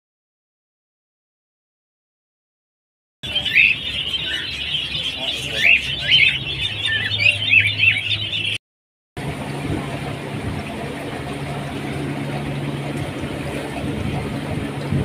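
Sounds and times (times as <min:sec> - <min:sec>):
caged birds chirping: 0:03.2 - 0:08.6
steady mechanical hum: 0:09.2 - 0:15.0.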